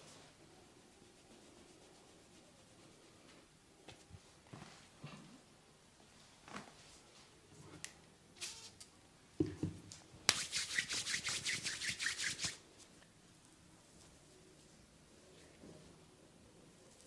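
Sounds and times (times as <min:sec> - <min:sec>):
hands rubbing hair and skin: 0:10.3 - 0:13.0.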